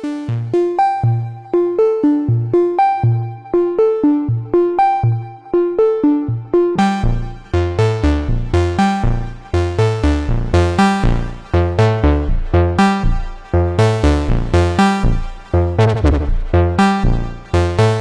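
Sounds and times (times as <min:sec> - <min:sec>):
synthesizer sequence: 0:00.0 - 0:18.0
deep bass notes: 0:06.2 - 0:18.0.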